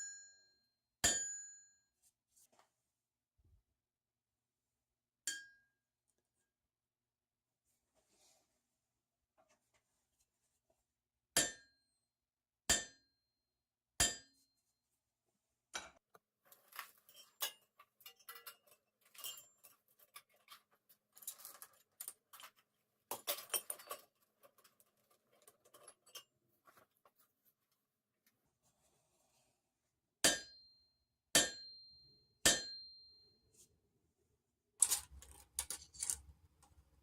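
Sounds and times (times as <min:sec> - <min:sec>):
hammer striking anvil: 0:01.0 - 0:01.4, 0:11.4 - 0:11.7, 0:12.7 - 0:13.0, 0:14.0 - 0:14.3, 0:30.2 - 0:30.6, 0:31.4 - 0:33.0
chain clinking on metal: 0:34.8 - 0:36.3.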